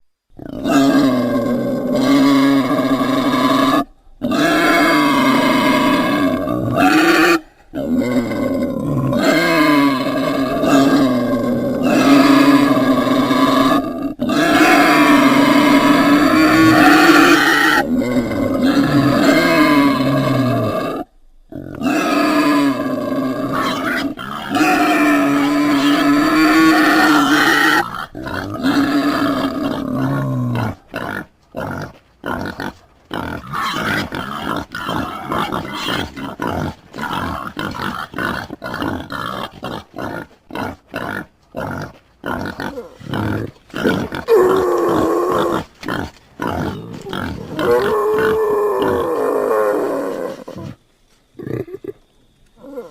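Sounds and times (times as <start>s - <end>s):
pig calling: 0.4s - 50.8s
pig grunting: 0.4s - 50.8s.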